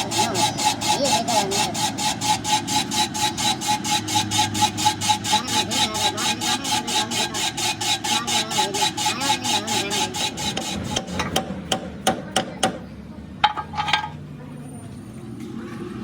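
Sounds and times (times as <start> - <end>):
steady ringing tone: 0.0 - 11.1
metal tool rasping on metal: 0.0 - 11.5, 13.4 - 14.2.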